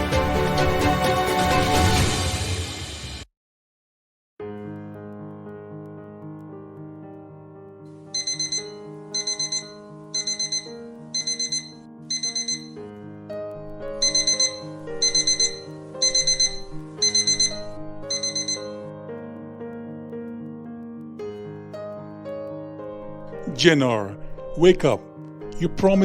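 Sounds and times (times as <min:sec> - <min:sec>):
soft piano music: 0:04.4 - 0:26.0
alarm clock beeping: 0:08.2 - 0:12.8, 0:14.0 - 0:18.8.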